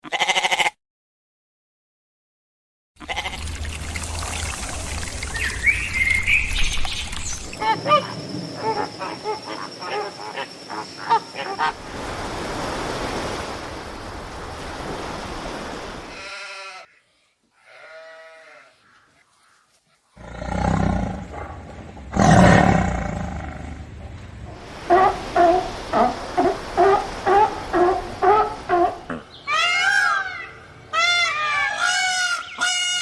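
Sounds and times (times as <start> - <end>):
deep animal calls: 7.5 - 11.8.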